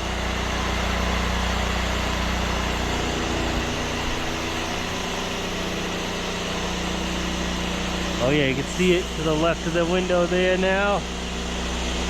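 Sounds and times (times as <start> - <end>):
pressure washers running: 0.0 - 12.0.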